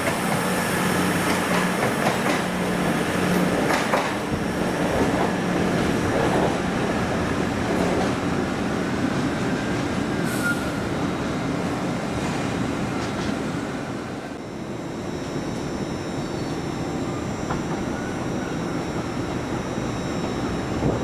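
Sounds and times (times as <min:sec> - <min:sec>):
train rumbling on tracks: 0:00.0 - 0:21.0
high wheel squeal: 0:10.1 - 0:11.1.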